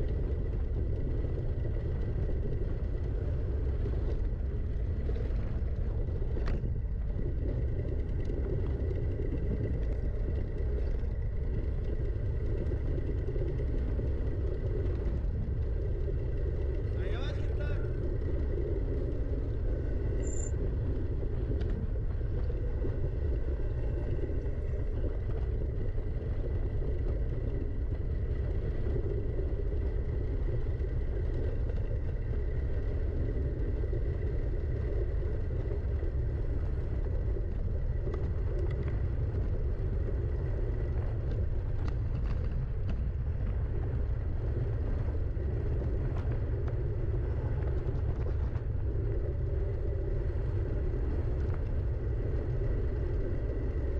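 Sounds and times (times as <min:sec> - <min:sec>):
wind rumble on microphone: 0:00.0 - 0:53.9.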